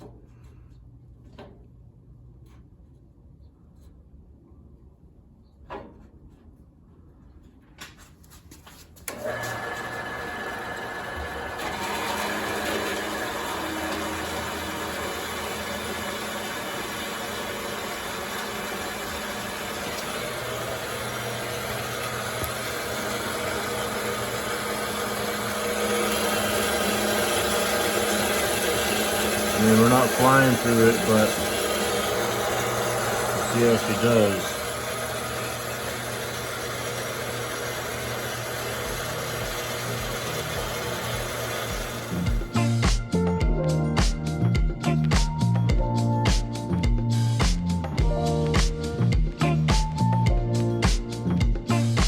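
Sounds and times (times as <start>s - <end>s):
band saw cutting steel: 9.1s - 42.8s.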